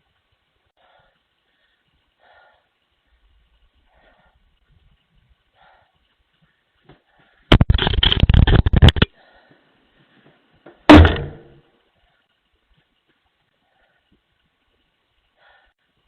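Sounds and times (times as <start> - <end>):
heavy pounding on door: 10.9 - 11.5
loud bang: 10.9 - 11.5.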